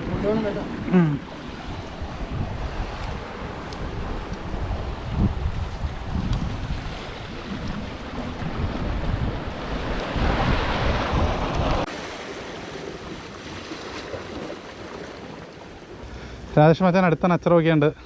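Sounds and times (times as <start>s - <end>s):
wind buffeting microphone: 0.0s - 11.9s
sea waves: 0.0s - 18.0s.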